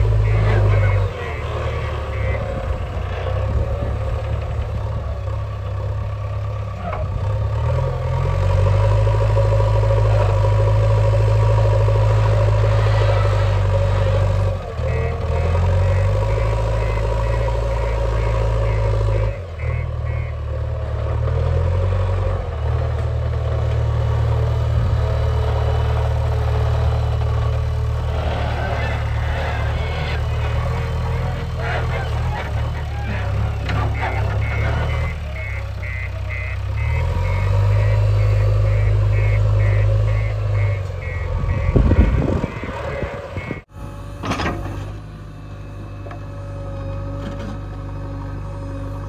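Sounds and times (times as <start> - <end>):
diesel engine under load: 0.0 - 49.0
short high beeps: 33.9 - 42.8, 43.4 - 43.6.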